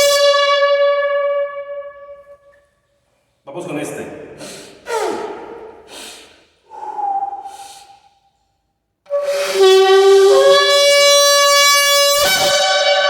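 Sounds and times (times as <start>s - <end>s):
shofar blast: 0.0s - 2.6s, 9.1s - 13.0s.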